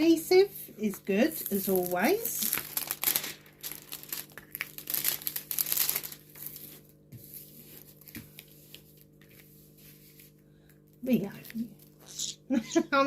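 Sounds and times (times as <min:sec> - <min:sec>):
plastic film crinkling: 0:01.2 - 0:07.0.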